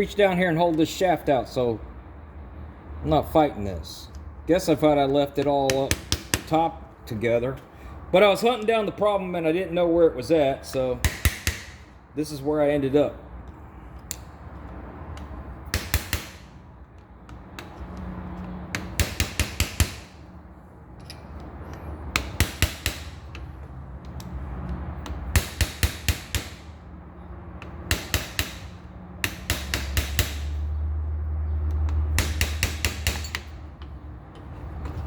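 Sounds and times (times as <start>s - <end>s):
hammer striking metal: 11.0s - 11.9s, 15.7s - 16.5s, 22.1s - 23.5s, 25.0s - 26.7s, 27.6s - 30.7s, 31.9s - 34.0s.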